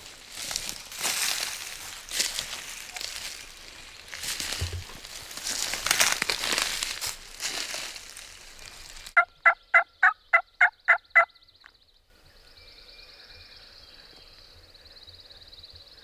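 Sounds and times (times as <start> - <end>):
footsteps crunching dry leaves: 0.0 - 9.2
wild turkey yelps: 9.2 - 11.4.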